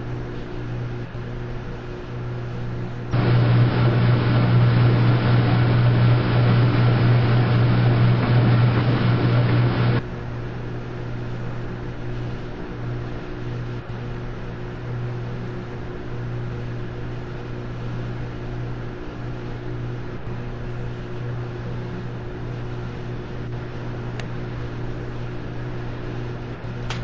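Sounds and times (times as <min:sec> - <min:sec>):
washing machine running: 0:02.3 - 0:10.3.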